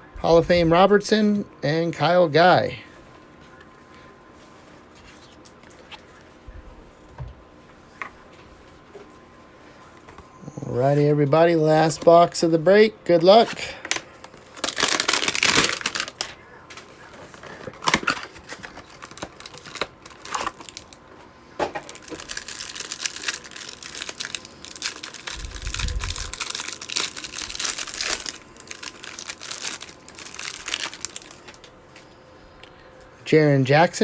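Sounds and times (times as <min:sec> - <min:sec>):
packaging crinkling and tearing: 0:13.4 - 0:32.0.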